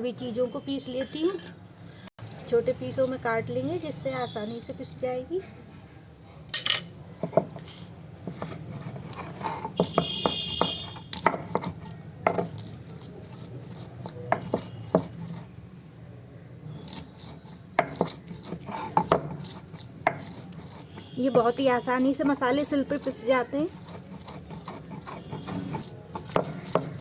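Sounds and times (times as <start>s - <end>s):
knife chopping nuts: 8.3s - 15.5s, 16.8s - 27.0s.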